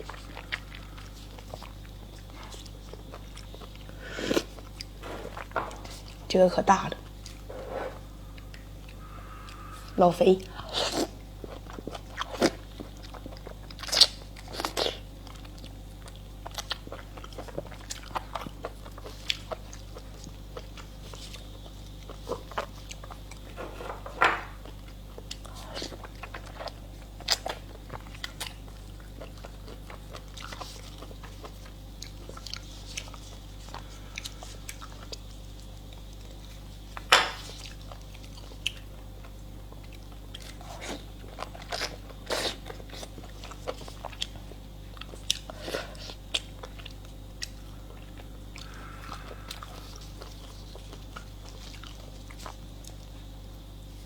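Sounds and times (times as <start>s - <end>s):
person chewing food: 0.0s - 54.0s.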